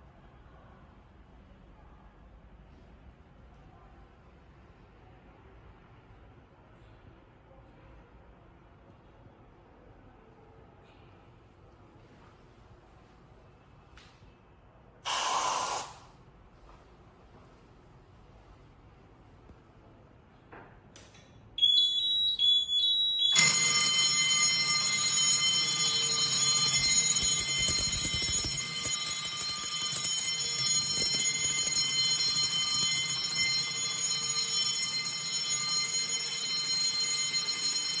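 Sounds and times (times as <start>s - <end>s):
high pulsing beep: 21.6s - 23.9s
shrill fire alarm: 21.6s - 38.0s.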